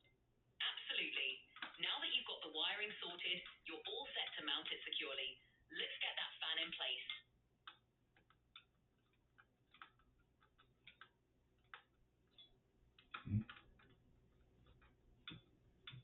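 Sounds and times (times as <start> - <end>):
computer hardware clicking: 7.1 - 16.0.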